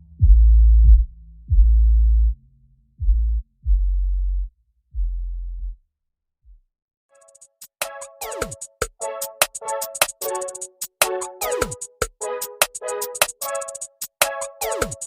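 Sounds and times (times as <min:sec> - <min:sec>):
deep electronic bass notes: 0:00.0 - 0:05.8.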